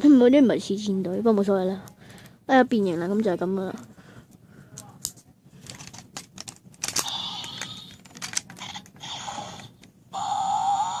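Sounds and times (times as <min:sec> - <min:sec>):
plastic toy clicking: 0:05.6 - 0:09.9.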